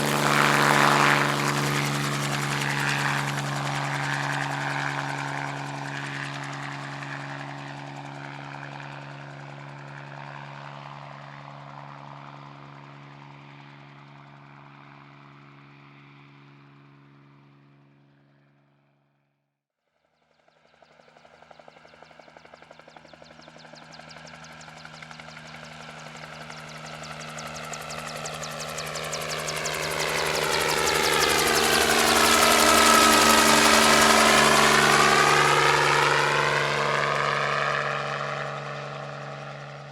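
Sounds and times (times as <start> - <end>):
helicopter rotor chopping: 0.0 - 11.9, 20.5 - 39.9.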